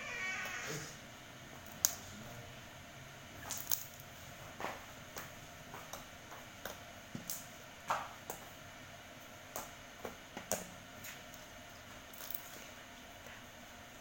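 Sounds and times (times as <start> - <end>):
slime squishing and popping: 3.4 - 4.1, 12.1 - 12.6.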